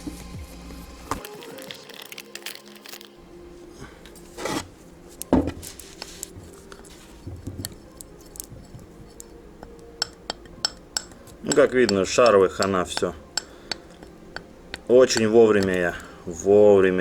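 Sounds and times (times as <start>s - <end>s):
metal clicks and knocks: 5.2s - 15.8s.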